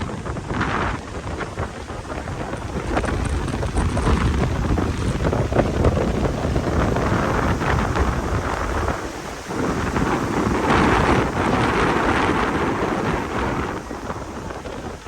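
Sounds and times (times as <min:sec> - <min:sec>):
steady hiss: 0:00.0 - 0:15.0
wind buffeting microphone: 0:00.0 - 0:15.0.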